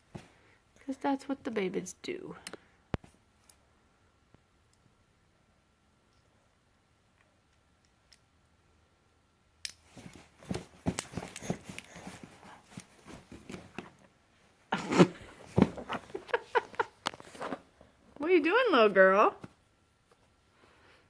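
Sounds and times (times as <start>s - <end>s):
baby rustling with toy: 9.8s - 14.0s.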